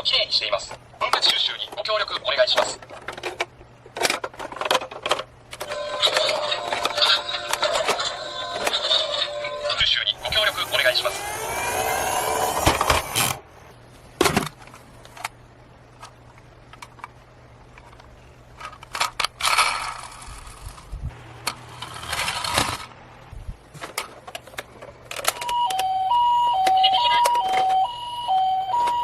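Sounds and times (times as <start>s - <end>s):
toy cars scraping: 5.7s - 13.4s, 18.6s - 20.9s, 21.5s - 22.9s
toy cars clicking and rattling: 10.2s - 13.4s, 17.8s - 22.9s
toy two-tone siren: 25.4s - 29.0s.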